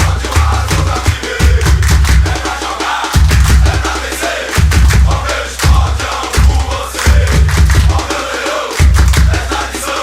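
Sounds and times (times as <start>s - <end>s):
heavy deep bass: 0.0s - 2.4s, 3.2s - 3.9s, 4.6s - 8.1s
drums: 0.0s - 10.0s
group chanting: 0.0s - 10.0s.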